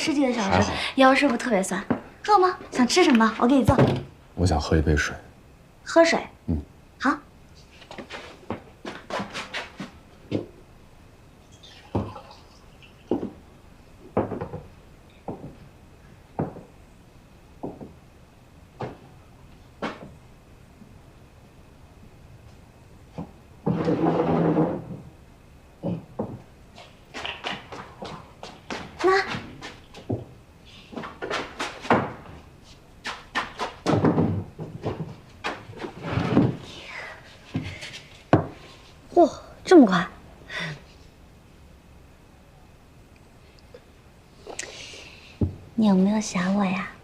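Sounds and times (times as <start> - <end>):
household knocks and bangs: 33.4 - 36.7.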